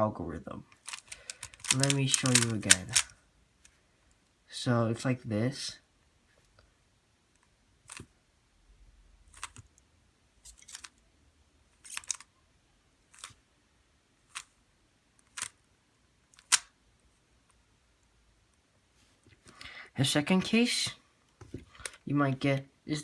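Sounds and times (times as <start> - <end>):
puzzle cube turning clicks: 0.7 - 3.7, 9.4 - 9.8, 10.5 - 11.0, 11.8 - 12.3, 13.2 - 13.4, 14.3 - 14.5, 15.2 - 15.6, 16.3 - 16.7.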